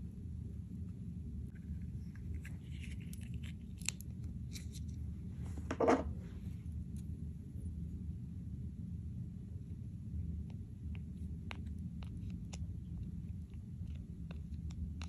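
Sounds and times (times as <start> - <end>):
steady low hum: 0.0 - 15.0
crunch: 1.5 - 5.0.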